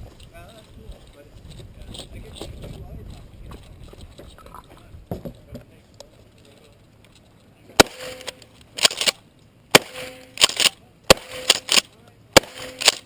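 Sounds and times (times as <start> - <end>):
quieter sharp cracks: 7.7 - 13.0
loud gunshots: 7.8 - 13.0.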